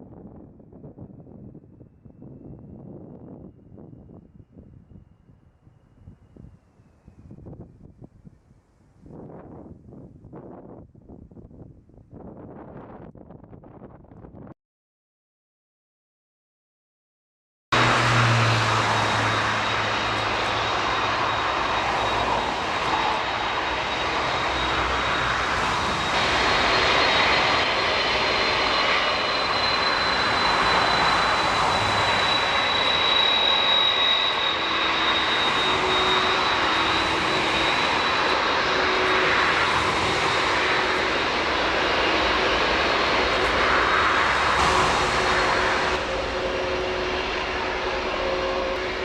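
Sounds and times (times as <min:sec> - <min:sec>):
jet engines running with whine: 0:17.8 - 0:49.0.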